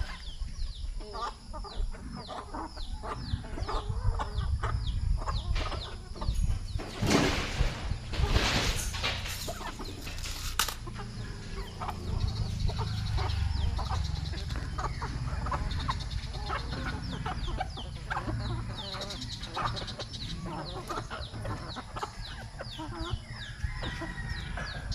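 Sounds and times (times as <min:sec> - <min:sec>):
chickens clucking: 0:00.0 - 0:24.9.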